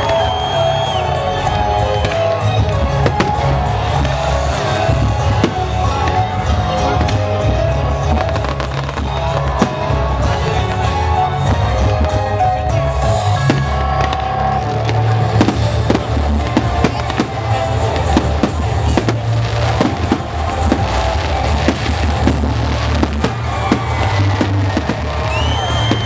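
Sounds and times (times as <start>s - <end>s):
whistling tone: 0.0s - 2.6s, 24.8s - 26.0s
fireworks bangs and crackles: 0.0s - 26.0s
loud music with pulsing bass: 0.0s - 26.0s.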